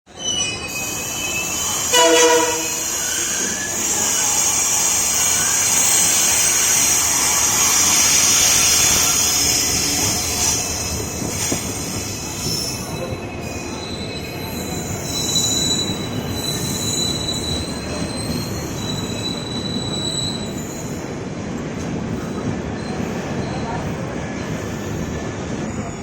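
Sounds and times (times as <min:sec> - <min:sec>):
train wheels and brakes screeching: 0:00.1 - 0:26.0
passing train rumble: 0:00.6 - 0:26.0
locomotive horn blast: 0:01.9 - 0:03.0.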